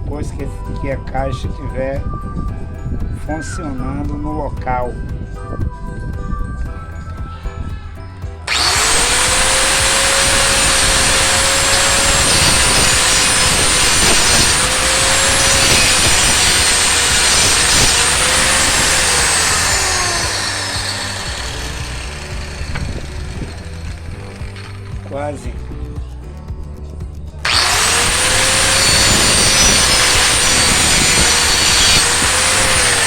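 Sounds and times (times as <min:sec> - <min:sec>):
electric saw cutting wood: 0:08.5 - 0:25.1, 0:27.4 - 0:33.0.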